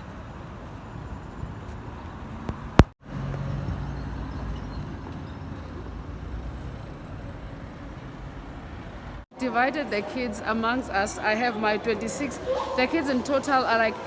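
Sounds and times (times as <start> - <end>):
road vehicle rumble: 0.0 - 9.3.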